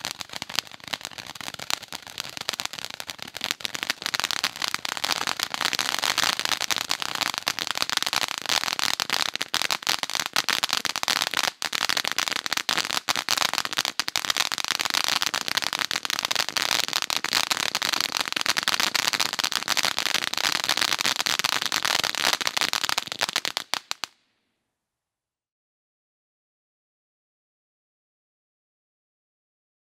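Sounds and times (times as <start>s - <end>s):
fireworks crackling: 0.0s - 24.2s.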